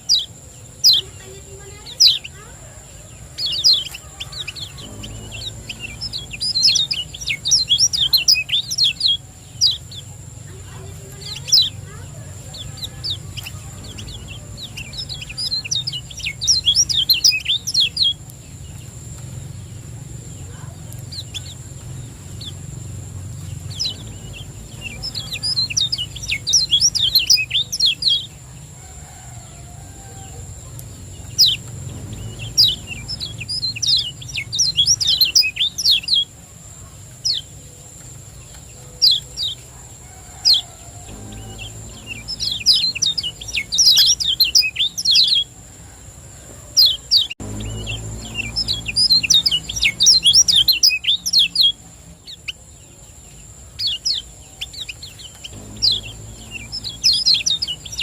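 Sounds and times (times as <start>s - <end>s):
bird chirping: 0.0s - 58.0s
faint high whine: 0.9s - 46.5s, 47.2s - 53.4s, 54.2s - 58.0s
low hum: 3.2s - 28.7s, 29.4s - 36.0s, 40.6s - 45.2s, 47.2s - 50.8s, 55.4s - 58.0s.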